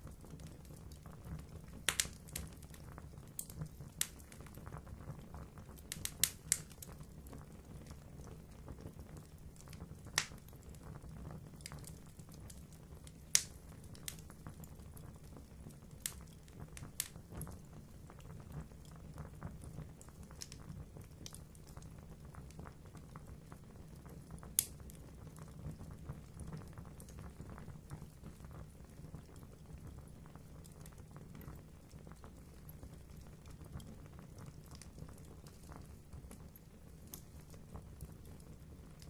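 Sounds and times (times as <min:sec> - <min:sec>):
fire crackling in a fireplace: 0:00.0 - 0:39.0
fire sharp pop: 0:01.9 - 0:02.2.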